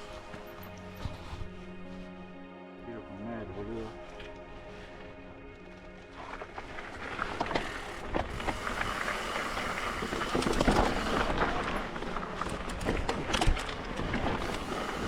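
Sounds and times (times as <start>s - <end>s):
tyres rolling on dirt: 5.6s - 15.0s
bike rattling over bumps: 6.2s - 15.0s.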